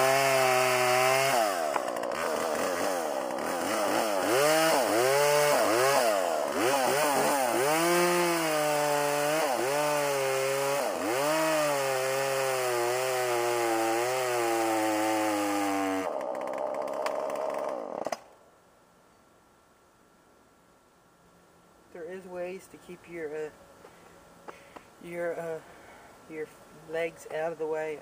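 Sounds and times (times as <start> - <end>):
chainsaw cutting wood: 0.0 - 18.4.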